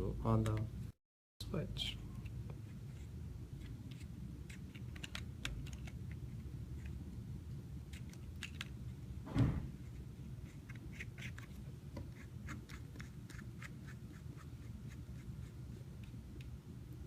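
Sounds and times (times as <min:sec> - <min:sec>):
steady low hum: 0:00.0 - 0:17.0
loud knock: 0:09.3 - 0:09.8.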